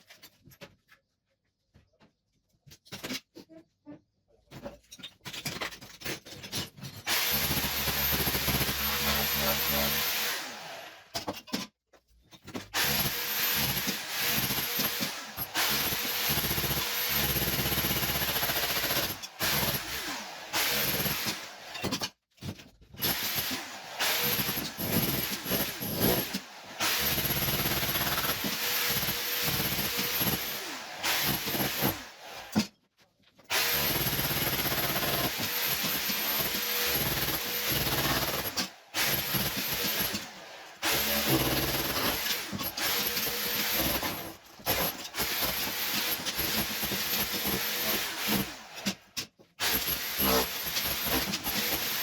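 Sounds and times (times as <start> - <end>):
electric power tool running: 7.2 - 11.1.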